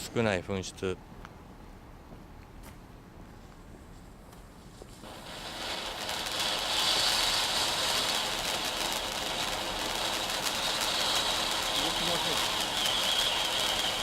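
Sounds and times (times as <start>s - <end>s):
firework fountain hissing: 5.0s - 14.0s.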